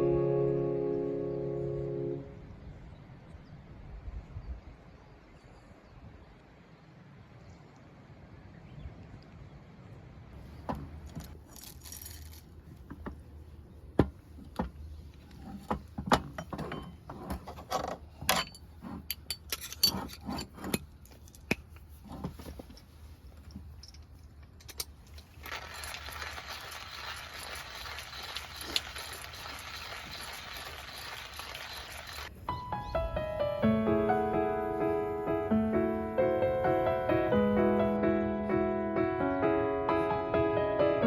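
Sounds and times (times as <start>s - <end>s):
small hard objects clinking: 11.0s - 12.5s, 24.8s - 32.3s.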